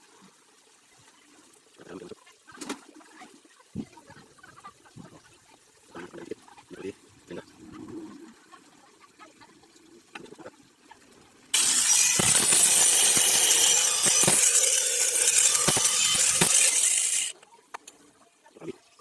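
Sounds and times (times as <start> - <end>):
power tool running: 11.6 - 17.3.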